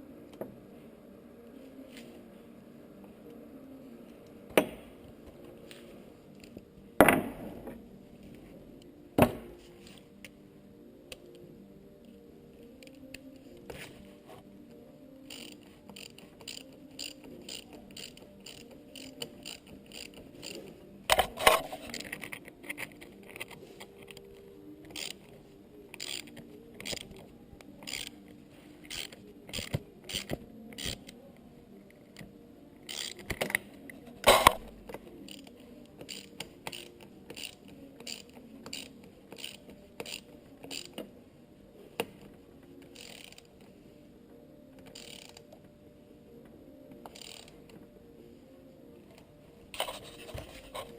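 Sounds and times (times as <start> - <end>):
ratchet wrench clicking: 15.3 - 24.2, 24.8 - 25.3, 25.9 - 27.2, 27.8 - 28.2, 28.8 - 31.2, 32.8 - 33.6, 35.3 - 41.0, 42.9 - 43.5, 44.9 - 45.4, 47.1 - 47.6.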